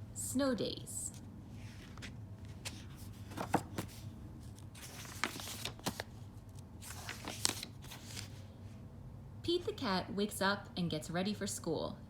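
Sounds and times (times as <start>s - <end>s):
book pages rustling: 1.1s - 8.5s.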